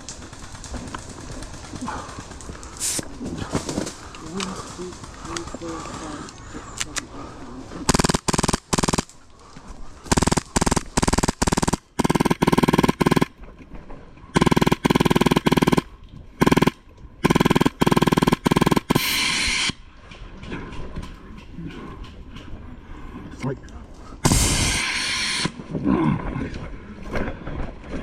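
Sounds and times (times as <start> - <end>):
air hiss: 2.8 - 3.0, 18.9 - 19.8, 24.2 - 25.6
airsoft rifle bursts: 7.9 - 9.2, 10.0 - 13.3, 14.4 - 19.8.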